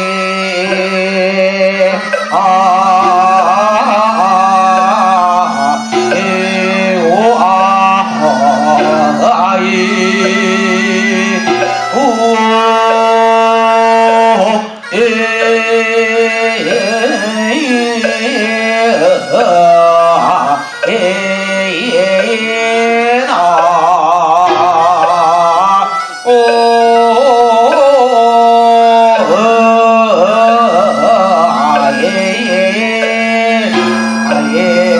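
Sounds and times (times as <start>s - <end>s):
sliding pitch melody: 0.0s - 34.9s
low drone note: 3.0s - 12.3s.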